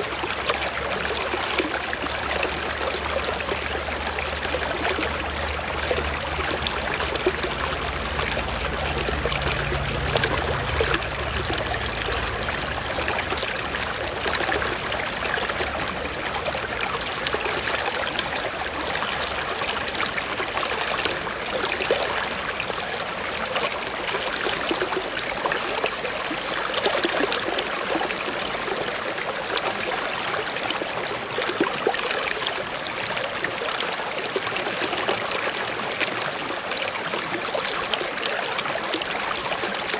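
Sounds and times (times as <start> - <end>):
small stream flowing: 0.0 - 39.9
low rumble: 3.4 - 16.4.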